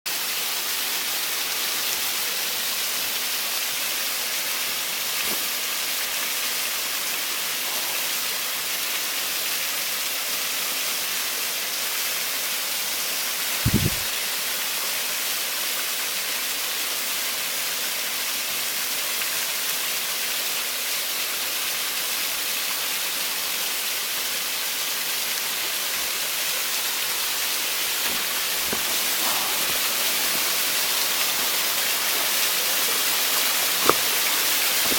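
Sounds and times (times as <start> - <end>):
waterfall rushing: 22.8 - 34.9.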